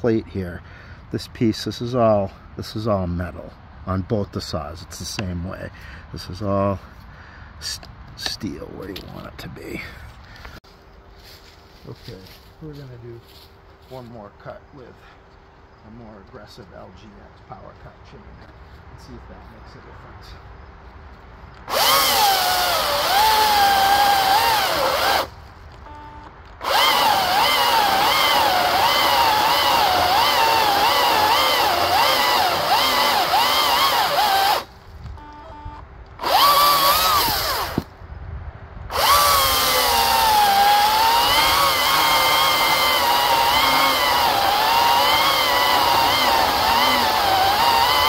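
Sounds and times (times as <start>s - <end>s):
electric chainsaw cutting log: 21.6s - 25.3s, 26.6s - 34.7s, 36.2s - 37.9s, 38.9s - 48.0s.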